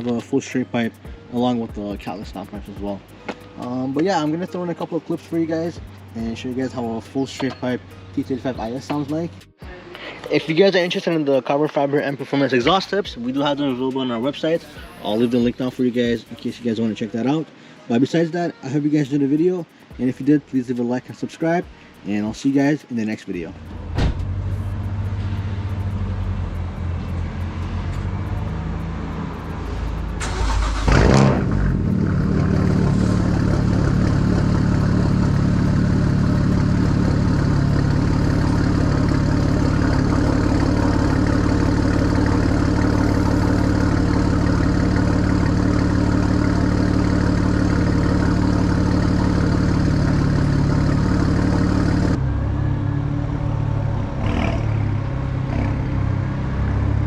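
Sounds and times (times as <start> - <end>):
loud car engine revving: 24.3 - 57.0.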